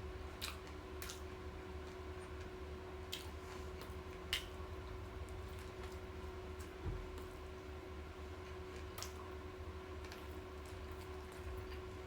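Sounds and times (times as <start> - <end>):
faint steady hum: 0.0 - 12.0
wet chewing: 0.3 - 1.3, 8.4 - 9.4, 10.0 - 12.0.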